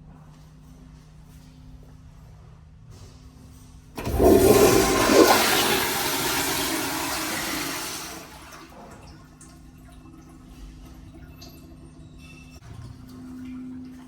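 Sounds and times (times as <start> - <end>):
toilet flushing: 4.0 - 14.0.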